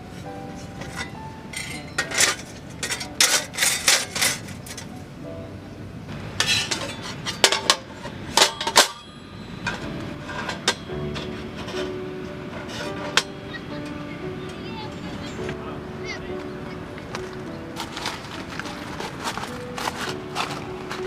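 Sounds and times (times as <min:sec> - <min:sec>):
metal plates clanking: 0:00.0 - 0:05.0, 0:06.1 - 0:15.6, 0:16.2 - 0:21.0.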